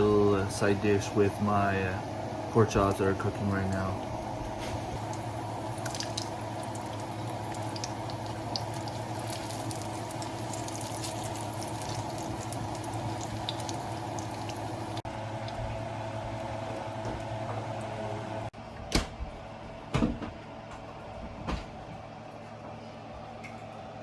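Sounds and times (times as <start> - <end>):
food sizzling in oil: 5.0 - 15.0.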